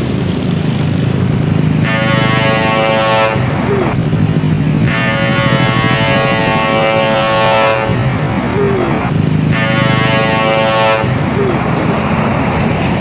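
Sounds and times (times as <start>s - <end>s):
vehicle engine rumble: 0.0s - 13.0s
air horn blasts: 1.6s - 4.0s, 4.8s - 11.6s.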